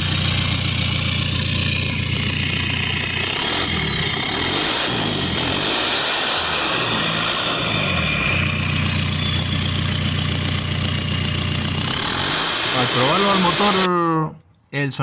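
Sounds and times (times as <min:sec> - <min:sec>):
diesel engine idling: 0:00.0 - 0:13.9
turbo whistle: 0:04.5 - 0:10.1.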